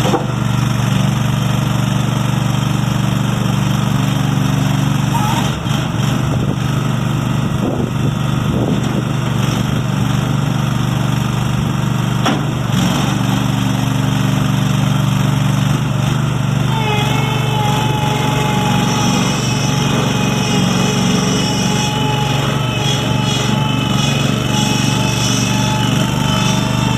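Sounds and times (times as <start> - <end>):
engine running steadily: 0.0 - 26.9
steady high whine: 16.3 - 26.9.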